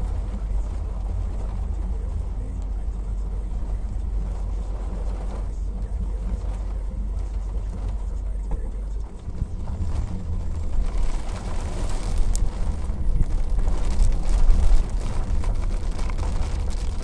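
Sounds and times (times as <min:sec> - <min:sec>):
car driving rumble: 0:00.0 - 0:17.0
rain: 0:00.0 - 0:17.0.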